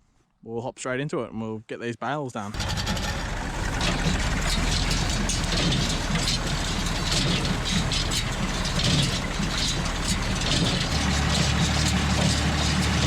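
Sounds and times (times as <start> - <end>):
tractor diesel engine running: 2.6 - 13.0.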